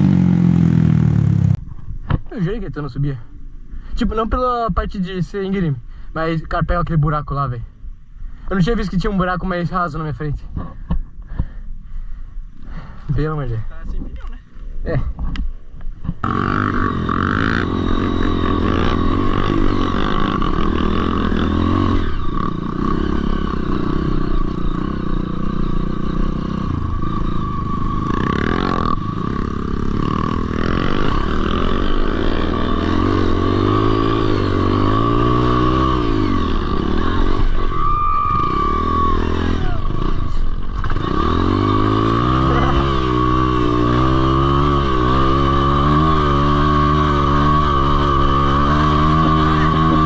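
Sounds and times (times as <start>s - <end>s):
dirt bike engine revving: 0.0s - 1.6s, 16.2s - 50.0s
steady high whine: 0.0s - 1.6s.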